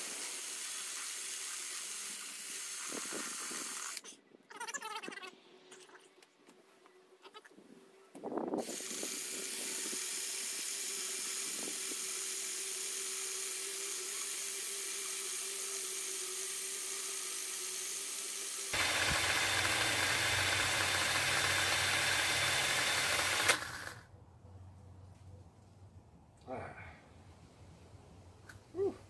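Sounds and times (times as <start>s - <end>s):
cordless drill running: 0.0s - 4.0s, 8.6s - 24.0s.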